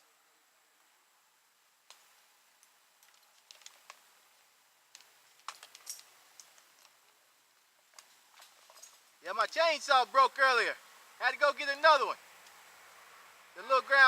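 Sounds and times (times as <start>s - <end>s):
faint sharp clicks: 12.4s - 12.6s.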